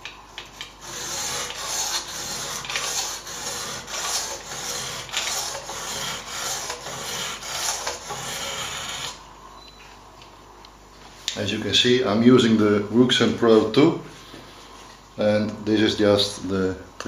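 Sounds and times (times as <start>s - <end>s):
sharpening stone scraping knife: 0.8s - 9.2s.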